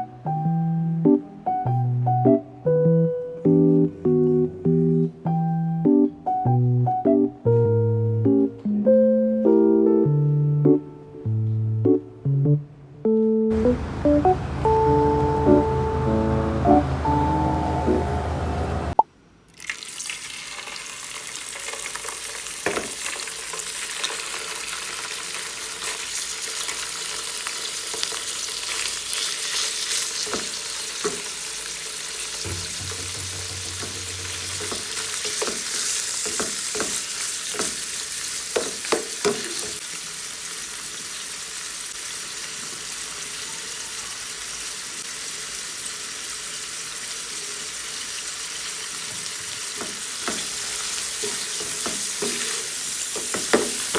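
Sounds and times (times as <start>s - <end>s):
food sizzling in a pan: 19.6s - 53.9s
utensil knocking against pan: 32.5s - 37.8s, 38.6s - 39.8s, 53.2s - 53.9s.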